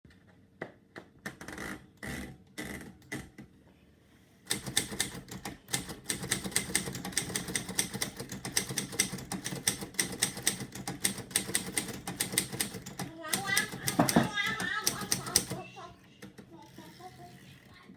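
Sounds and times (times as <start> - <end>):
typewriter keys clacking: 4.5 - 15.6.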